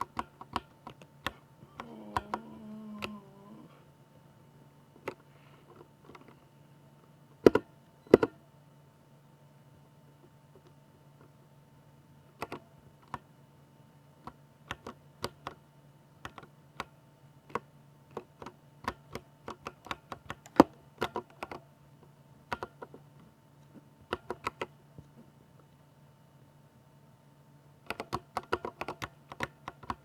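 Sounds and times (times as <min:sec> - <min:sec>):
mechanical keyboard key clacks: 0:27.9 - 0:30.0.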